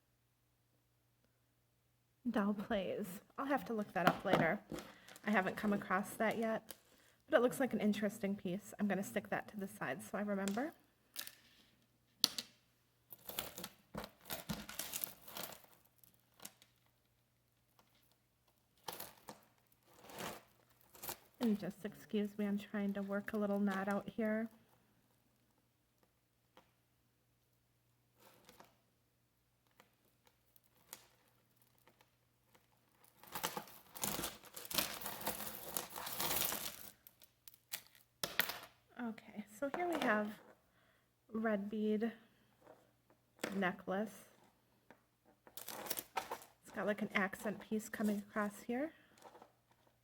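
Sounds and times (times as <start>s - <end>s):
jewelry rustling: 13.0s - 22.3s, 28.0s - 28.9s, 29.6s - 38.8s, 42.4s - 43.4s, 44.3s - 50.0s
bag crinkling and rustling: 13.2s - 16.9s, 30.5s - 38.1s
beads and chain clicking: 33.6s - 38.0s.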